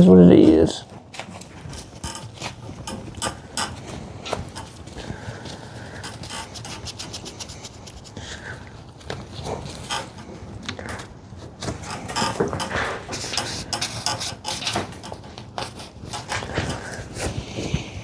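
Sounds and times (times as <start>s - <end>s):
metal parts clicking and knocking: 1.7s - 5.0s, 6.0s - 7.3s, 9.6s - 17.0s.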